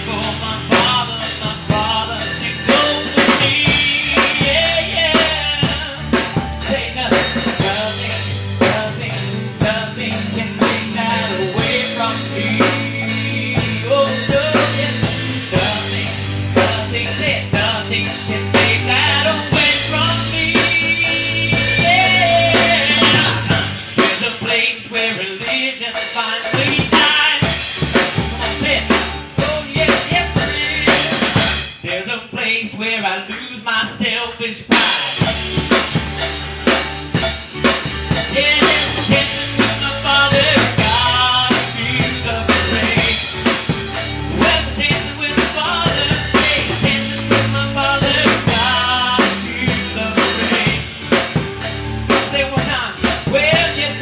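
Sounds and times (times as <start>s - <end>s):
melodic lead line: 0.0s - 24.6s, 26.4s - 31.7s, 34.8s - 54.0s
bass line: 0.0s - 25.1s, 26.4s - 31.8s, 34.7s - 54.0s
drum kit beat: 0.0s - 32.0s, 34.6s - 54.0s.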